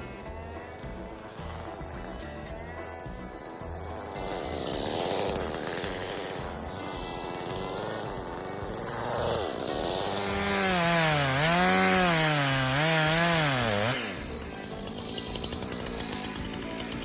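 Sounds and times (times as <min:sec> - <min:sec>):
chainsaw cutting wood: 0:00.0 - 0:17.0.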